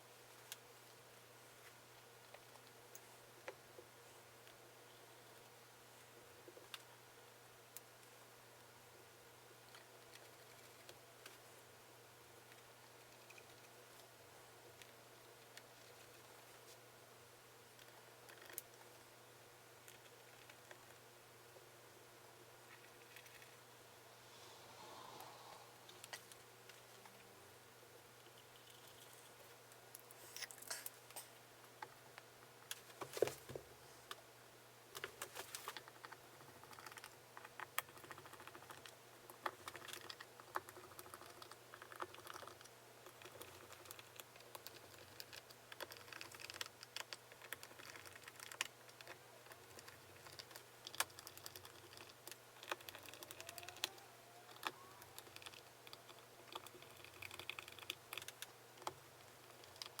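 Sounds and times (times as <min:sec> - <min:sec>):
soft rustles: 0:35.1 - 0:35.8.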